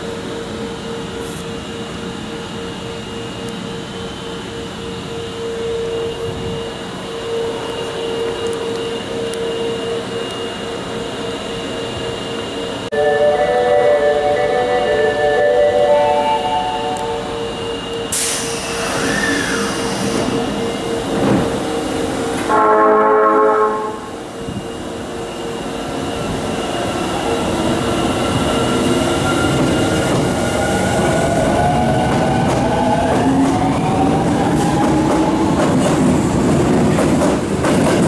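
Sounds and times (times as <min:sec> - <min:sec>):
train traction motors whining: 0:00.0 - 0:36.0
train horn: 0:12.9 - 0:18.2, 0:22.4 - 0:24.5.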